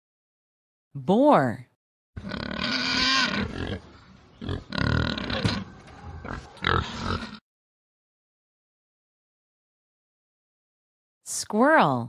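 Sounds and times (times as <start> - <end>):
wild boar vocalising: 2.2 - 7.4.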